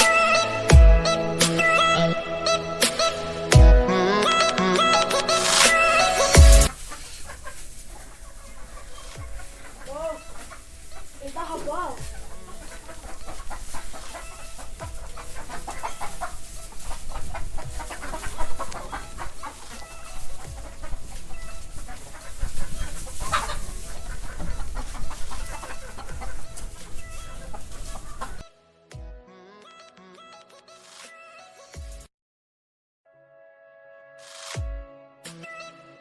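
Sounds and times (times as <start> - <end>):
chicken squawk: 0.0 - 28.5
chickens clucking: 0.0 - 28.5.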